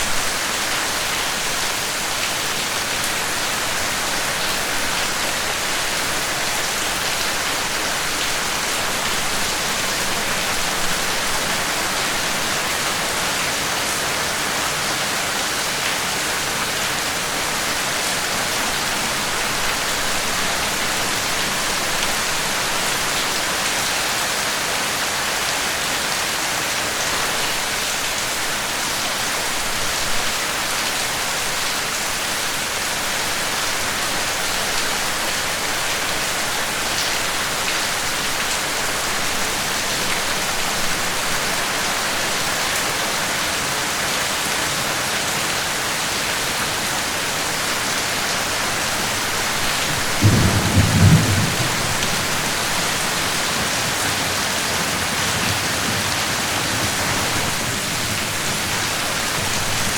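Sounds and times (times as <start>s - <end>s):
steady rain: 0.0s - 59.9s.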